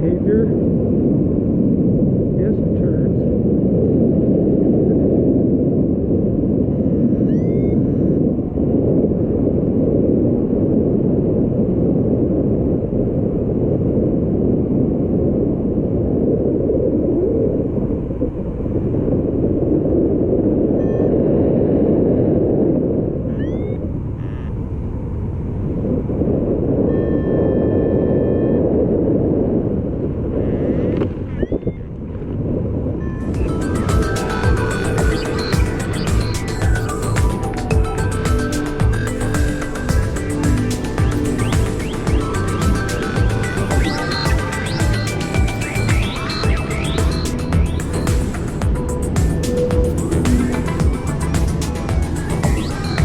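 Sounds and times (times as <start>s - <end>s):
wind buffeting microphone: 0.0s - 53.0s
held electronic tone: 6.7s - 8.3s, 23.3s - 24.6s, 33.0s - 53.0s
high rising chirps: 33.2s - 53.0s.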